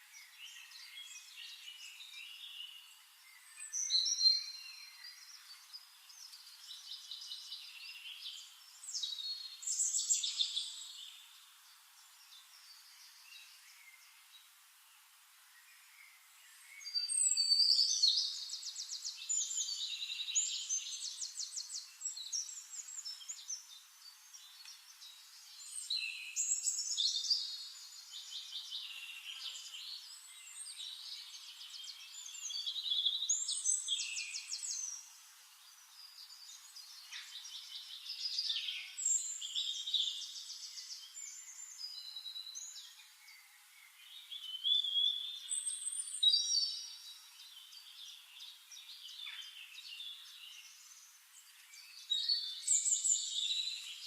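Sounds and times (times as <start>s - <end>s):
songbird trilling and chirping: 0.1s - 14.2s, 15.8s - 54.0s.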